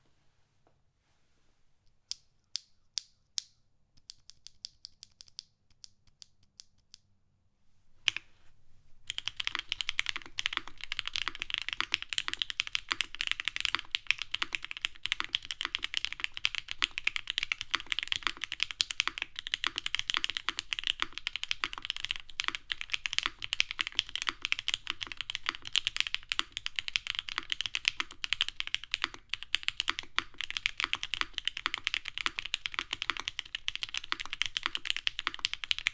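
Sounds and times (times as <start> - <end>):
mechanical keyboard typing: 9.1 - 35.9.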